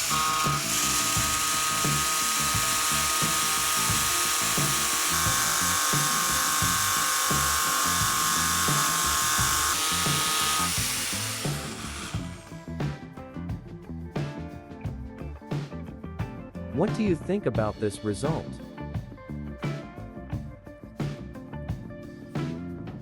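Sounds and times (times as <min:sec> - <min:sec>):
abrasive hissing on steel: 0:00.0 - 0:12.6
angle grinder whining: 0:00.0 - 0:12.8
music with steady beat: 0:00.0 - 0:23.0.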